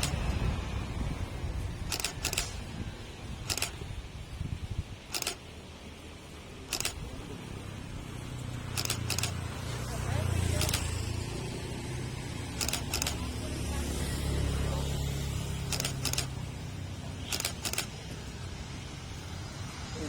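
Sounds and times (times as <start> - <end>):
camera shutter firing: 0.0 - 0.3, 1.9 - 2.6, 3.5 - 3.8, 5.1 - 5.4, 6.7 - 7.1, 8.8 - 9.4, 10.6 - 11.0, 12.6 - 13.3, 15.7 - 16.4, 17.3 - 18.0.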